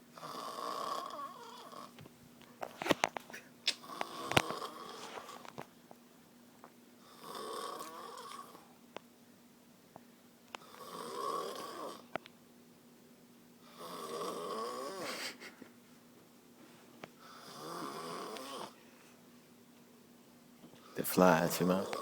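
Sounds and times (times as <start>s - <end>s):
person snoring: 0.2s - 1.9s, 3.9s - 5.4s, 7.1s - 8.7s, 10.6s - 12.1s, 13.7s - 15.3s, 17.3s - 18.8s, 21.8s - 22.0s.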